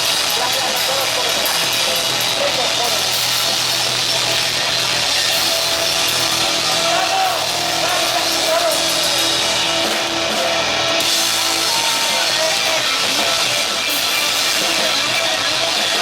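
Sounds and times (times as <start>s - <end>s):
drums: 0.0s - 16.0s
electric guitar: 0.0s - 16.0s.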